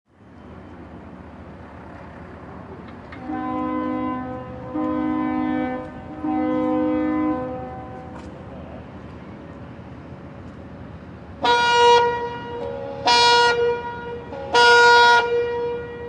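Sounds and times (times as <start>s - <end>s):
ship's horn blasts: 3.1s - 8.4s, 11.4s - 16.0s.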